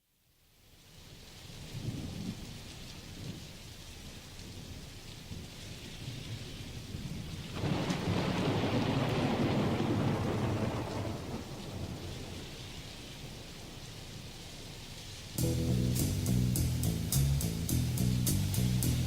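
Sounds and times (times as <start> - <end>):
steady rain falling: 0.0 - 19.0
thunder rumbling: 7.5 - 12.6.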